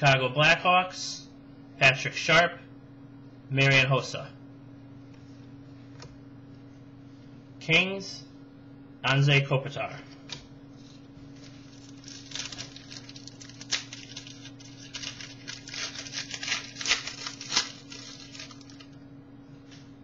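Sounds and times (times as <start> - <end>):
steady electrical hum: 0.0 - 20.0
cards rustling and sliding: 10.3 - 19.0.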